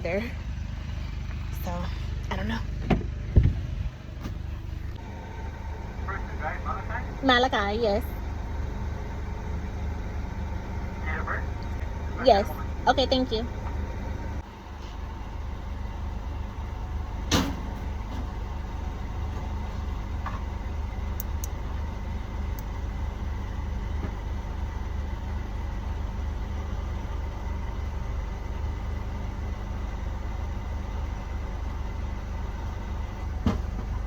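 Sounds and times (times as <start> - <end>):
car engine rumbling: 0.0 - 34.0.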